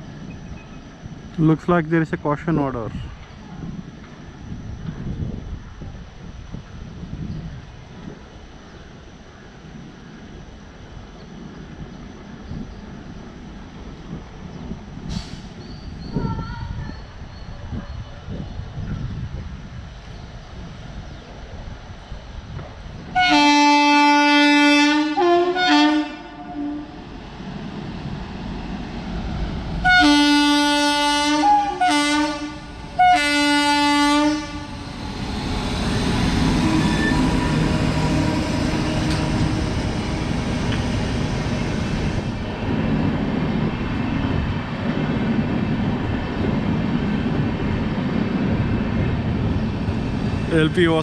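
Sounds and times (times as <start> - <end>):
locomotive horn blasts: 23.2 - 26.9, 29.8 - 34.8
train wheels clattering on rail: 34.7 - 42.8.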